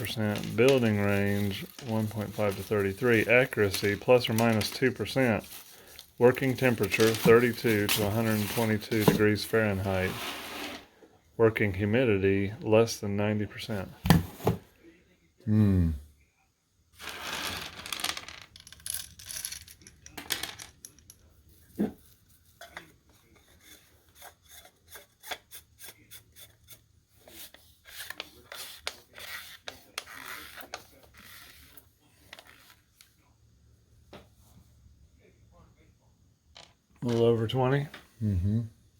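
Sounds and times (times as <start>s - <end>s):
rustling and scraping: 0.0s - 11.0s.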